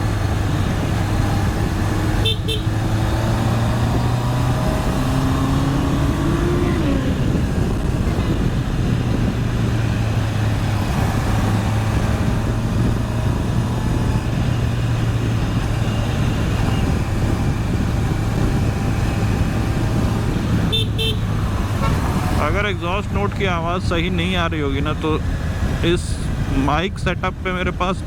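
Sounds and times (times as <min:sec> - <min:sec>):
motorcycle engine cruising: 0:00.0 - 0:28.0
wind and road rush: 0:00.0 - 0:28.0.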